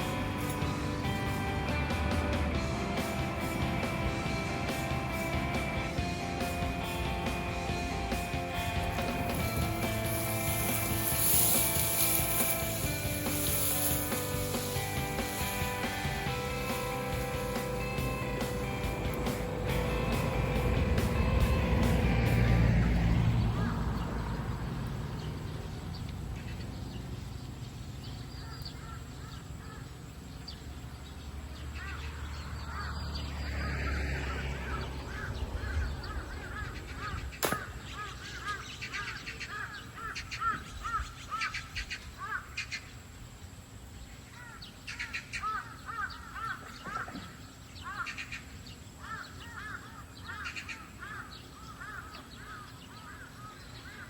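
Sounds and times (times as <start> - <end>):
sharp click: 37.4 - 37.8.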